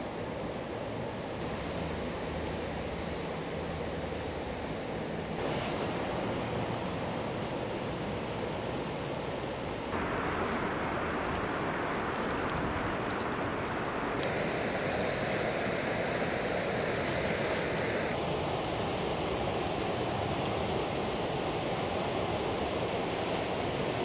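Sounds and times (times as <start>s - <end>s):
river water rushing: 9.9s - 18.6s
wind on microphone: 10.0s - 14.3s.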